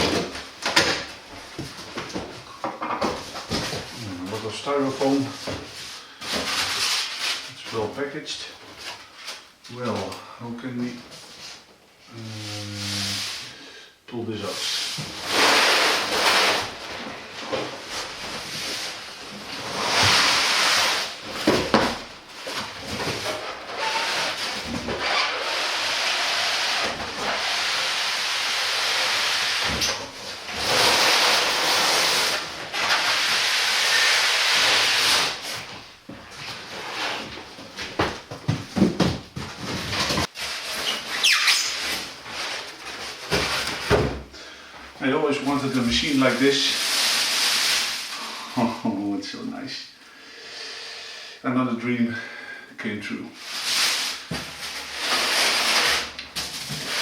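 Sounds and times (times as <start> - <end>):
cardboard and styrofoam scraping: 3.1 - 7.9, 14.5 - 44.2, 45.3 - 48.8, 53.4 - 57.0
styrofoam squeak: 22.5 - 35.6, 39.8 - 44.0, 53.6 - 57.0.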